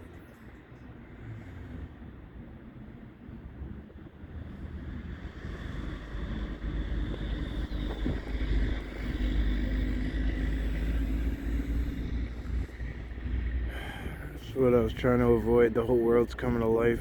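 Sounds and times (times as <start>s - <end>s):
vehicle engine drone: 0.0s - 17.0s
steady hum: 4.8s - 17.0s.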